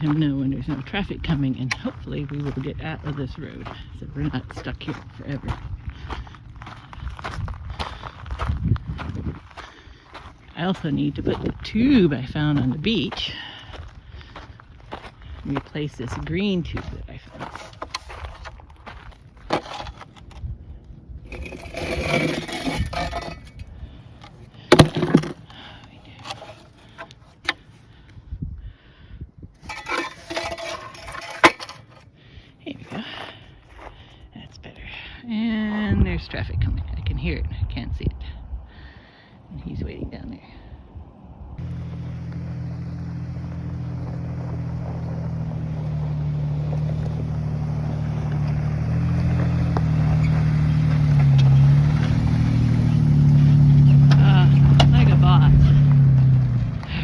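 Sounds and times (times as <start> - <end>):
hard objects scraping and clattering: 19.5 - 20.5, 21.3 - 27.6, 29.6 - 32.1
vehicle engine running: 41.6 - 57.0.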